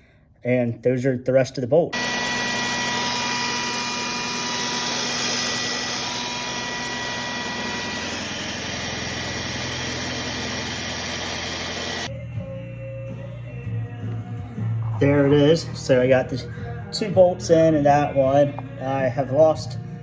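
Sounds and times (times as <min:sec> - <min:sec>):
electric drill running: 0:02.0 - 0:12.1.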